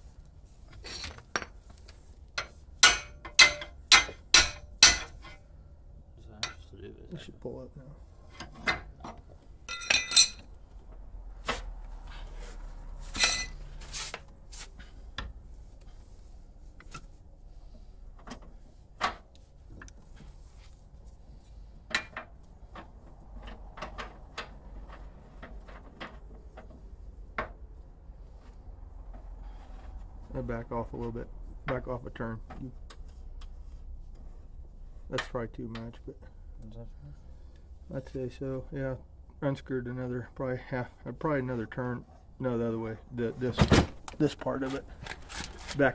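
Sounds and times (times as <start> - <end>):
hand tools clinking on metal: 2.4 - 5.3, 9.7 - 10.5, 13.2 - 13.6.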